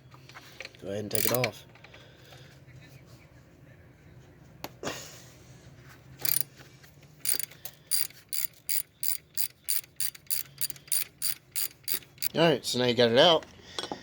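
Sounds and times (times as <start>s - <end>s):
ratchet pawl clicking: 1.1s - 1.5s, 6.2s - 6.5s, 7.2s - 12.4s.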